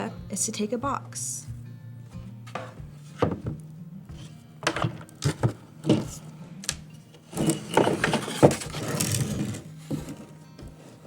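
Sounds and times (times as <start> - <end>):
quiet background music: 0.0 - 11.0
scraping and rustling: 4.2 - 6.3, 7.2 - 11.0.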